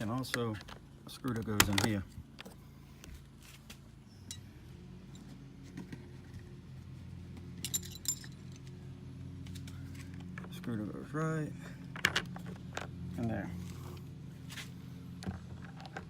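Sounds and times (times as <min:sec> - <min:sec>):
steady low hum: 0:00.0 - 0:16.0
small screws and screwdriver clinking: 0:07.5 - 0:08.8.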